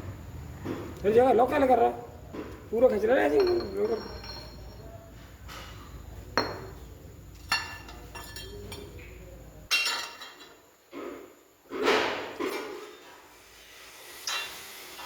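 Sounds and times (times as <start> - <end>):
metal tools clinking: 3.2 - 6.5, 7.3 - 9.0.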